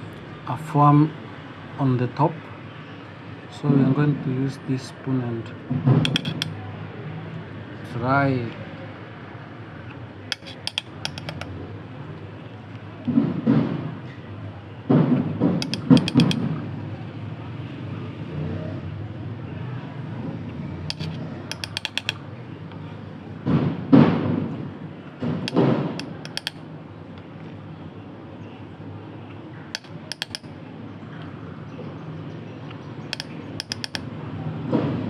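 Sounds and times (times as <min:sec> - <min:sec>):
metal spoon clinking on glass: 0:06.1 - 0:06.5, 0:10.3 - 0:11.4, 0:15.6 - 0:16.4, 0:20.9 - 0:22.2, 0:25.5 - 0:26.5, 0:29.8 - 0:30.5, 0:33.2 - 0:34.0.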